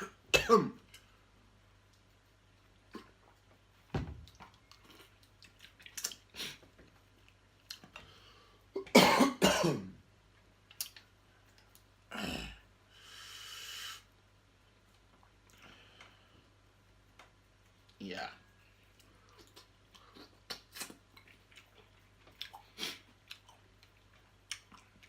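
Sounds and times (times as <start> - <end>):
person coughing: 0.0 - 0.8, 8.8 - 9.9
eating clicks and smacks: 4.2 - 8.0, 10.6 - 12.0, 18.9 - 25.0
breathy hiss: 12.3 - 14.2.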